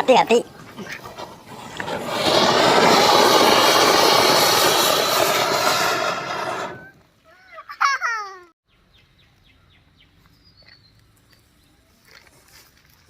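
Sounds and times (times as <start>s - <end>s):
firework fountain hissing: 0.4s - 7.0s
bird chirps: 8.7s - 11.9s.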